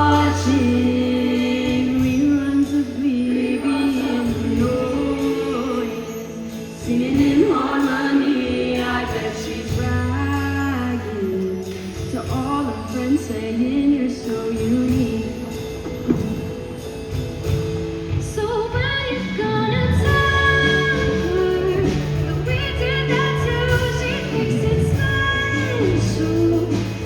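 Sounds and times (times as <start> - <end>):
live band accompaniment: 0.0 - 27.0
show choir singing in parts: 3.1 - 10.2.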